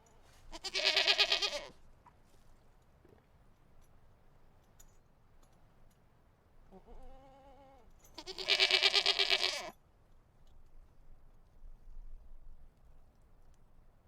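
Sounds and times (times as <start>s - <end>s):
goat bleating: 0.5s - 1.8s, 6.7s - 9.8s.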